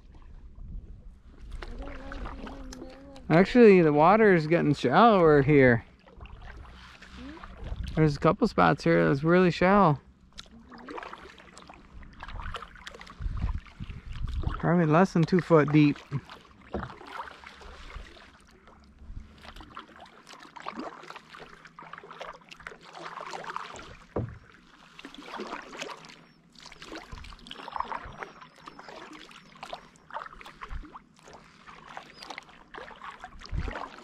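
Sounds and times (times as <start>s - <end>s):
paddle strokes splashing water: 1.2s - 34.0s
low knocks: 24.1s - 24.5s.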